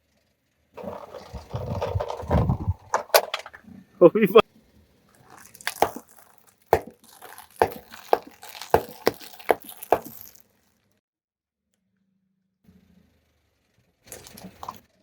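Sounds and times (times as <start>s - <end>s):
objects crushed under car tyre: 0.8s - 3.6s, 5.2s - 10.6s, 14.1s - 14.9s.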